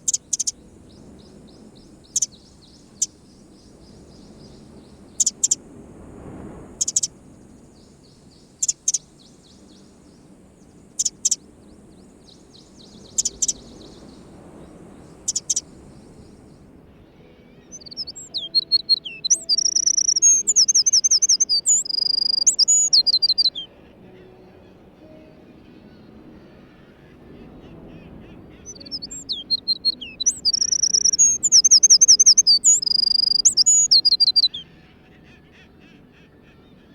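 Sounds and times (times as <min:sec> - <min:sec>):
bird song of trills: 0:00.0 - 0:36.9
bird calling high notes: 0:07.8 - 0:36.9.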